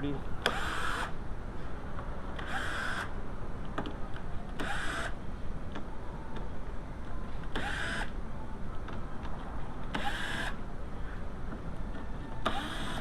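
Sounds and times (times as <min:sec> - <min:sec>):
cordless power tool whirring: 0:00.4 - 0:01.1, 0:10.0 - 0:10.6, 0:12.4 - 0:13.0.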